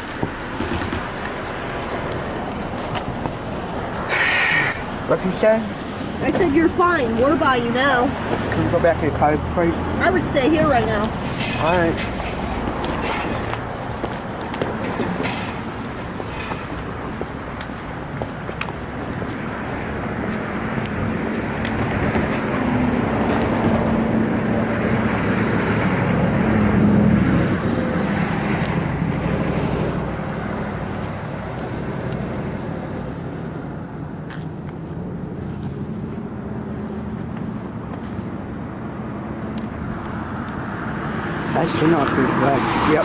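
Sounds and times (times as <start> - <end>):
motor vehicle passing by: 39.0 - 43.0.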